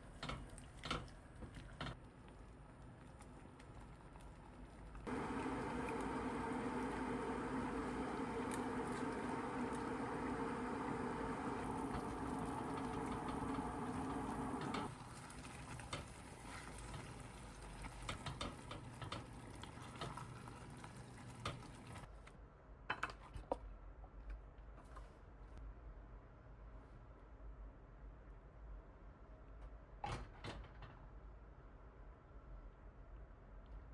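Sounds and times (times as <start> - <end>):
steady hum: 5.1 - 14.9.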